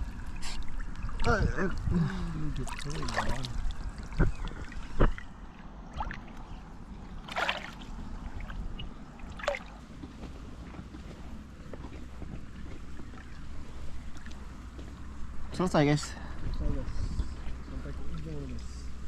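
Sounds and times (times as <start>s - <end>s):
faint trickle of water: 0.0s - 9.8s
water splashes: 0.0s - 9.9s.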